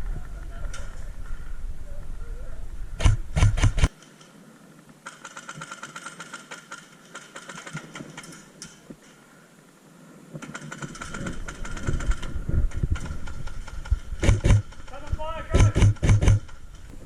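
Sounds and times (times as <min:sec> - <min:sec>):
loud knocks: 0:13.0 - 0:16.5.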